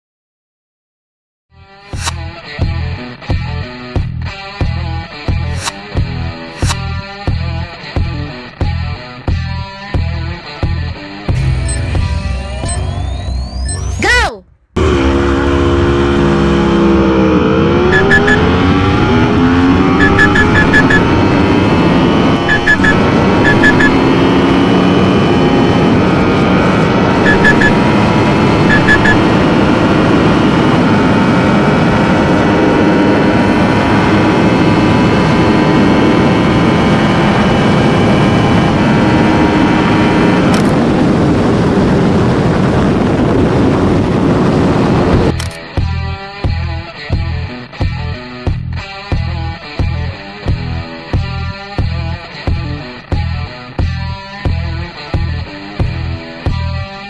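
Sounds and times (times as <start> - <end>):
motorcycle engine accelerating: 11.3 - 56.6
wind noise rushing: 15.2 - 45.4.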